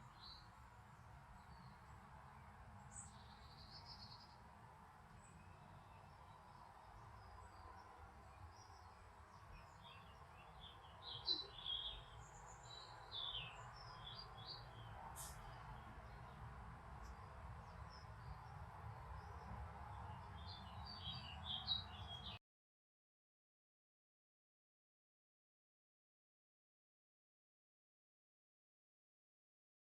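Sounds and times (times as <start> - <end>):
small birds chirping: 0.0 - 4.5, 5.2 - 22.4.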